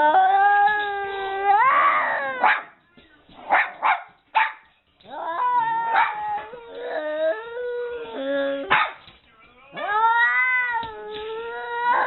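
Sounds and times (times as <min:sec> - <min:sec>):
dog crying and howling: 0:00.0 - 0:02.7, 0:05.1 - 0:08.9, 0:09.8 - 0:12.0
dog barking: 0:02.4 - 0:02.7, 0:03.5 - 0:04.6, 0:05.9 - 0:06.2, 0:08.7 - 0:09.0.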